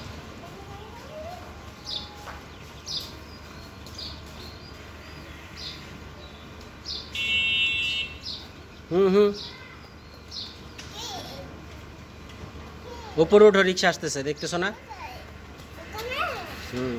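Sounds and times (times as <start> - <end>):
bird chirping: 1.7 - 10.9.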